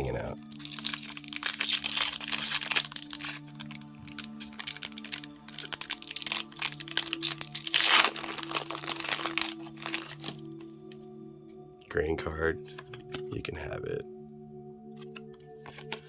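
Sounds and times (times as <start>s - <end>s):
foil wrapper crinkling and tearing: 0.0s - 10.7s, 15.0s - 16.0s.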